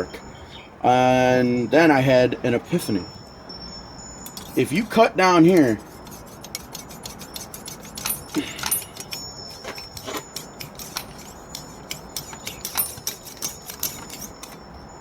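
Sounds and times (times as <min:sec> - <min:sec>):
steel sockets clinking: 0:03.6 - 0:15.0.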